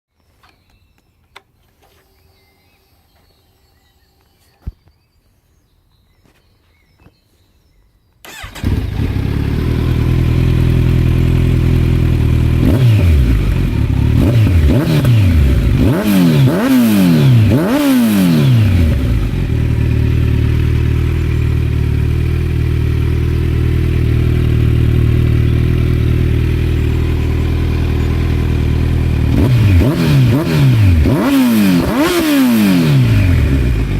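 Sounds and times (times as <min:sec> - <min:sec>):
motorcycle engine revving and idling: 0:08.3 - 0:33.9.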